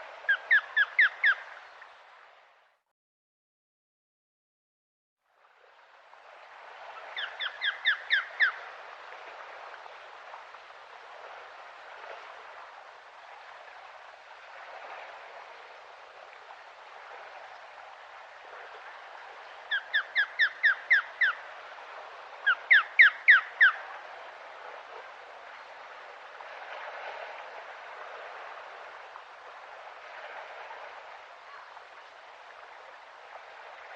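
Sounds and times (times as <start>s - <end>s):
bird high whistled calls: 0.3s - 1.4s, 7.2s - 8.6s, 19.7s - 21.4s, 22.5s - 23.8s.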